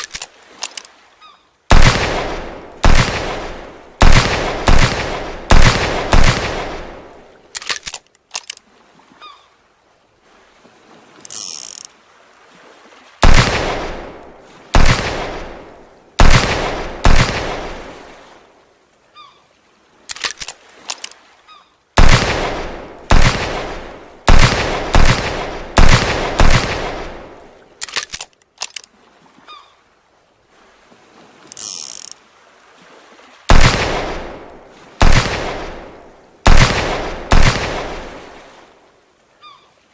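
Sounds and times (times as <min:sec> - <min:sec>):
revolver gunshots echoing: 0:01.7 - 0:07.2, 0:13.2 - 0:14.2, 0:14.8 - 0:17.8, 0:22.0 - 0:27.4, 0:33.5 - 0:38.3
light clicks: 0:20.1 - 0:21.2.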